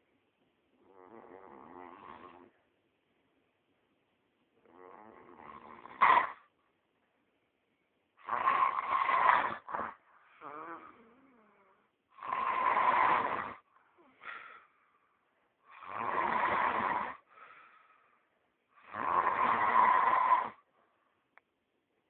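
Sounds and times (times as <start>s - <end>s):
man snoring loudly: 0.9s - 2.5s, 4.6s - 6.3s, 8.3s - 11.1s, 12.2s - 13.6s, 15.7s - 17.2s, 18.8s - 20.6s
soft breaths: 13.6s - 15.8s, 17.2s - 18.8s.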